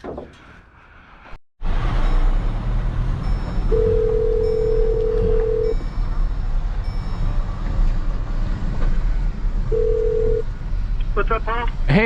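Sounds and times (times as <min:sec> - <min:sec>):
road and engine rumble: 0:01.6 - 0:12.0
phone ringback tone: 0:03.6 - 0:05.8, 0:09.7 - 0:10.4.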